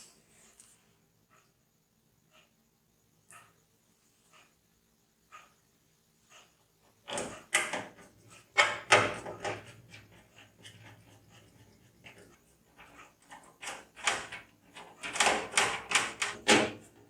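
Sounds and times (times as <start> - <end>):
faint ticks: 2.2 - 2.6, 3.2 - 4.6
hard parts knocking and clattering: 7.0 - 10.8, 12.0 - 16.8.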